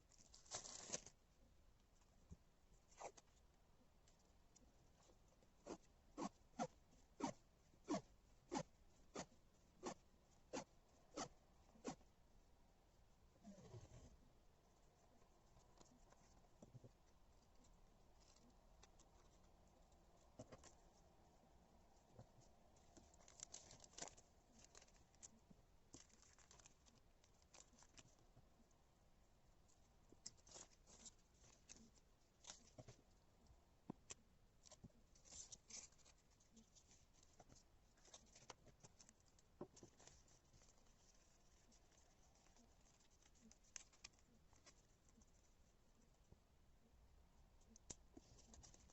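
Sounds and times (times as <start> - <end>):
tape ticks and rustles: 22.0 - 28.7, 29.7 - 46.4, 47.6 - 48.9.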